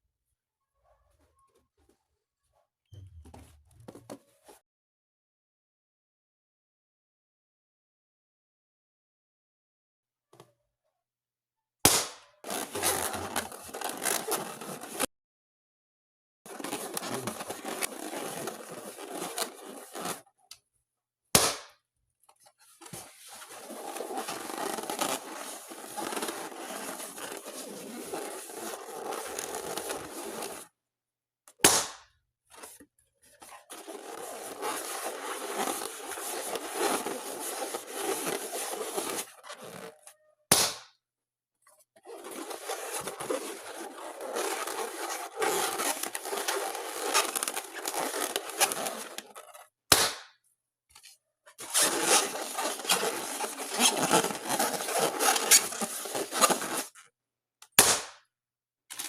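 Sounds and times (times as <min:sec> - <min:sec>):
balloon popping: 0:31.6 - 0:32.1, 0:40.5 - 0:41.0, 0:49.9 - 0:50.4, 0:57.7 - 0:58.3.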